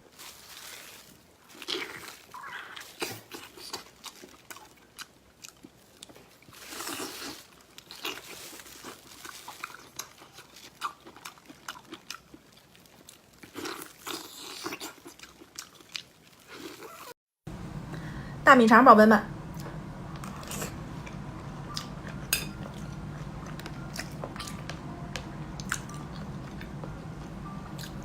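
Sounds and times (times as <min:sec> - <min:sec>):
person chewing crunchy food: 0:00.1 - 0:17.1, 0:19.6 - 0:24.8, 0:25.6 - 0:28.0.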